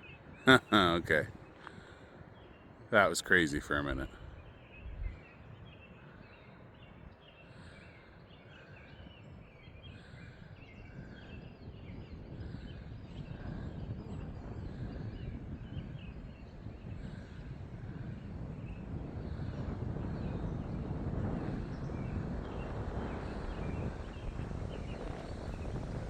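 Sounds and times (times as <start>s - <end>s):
birds chirping: 0.0s - 26.0s
wind rumbling on microphone: 0.0s - 26.0s.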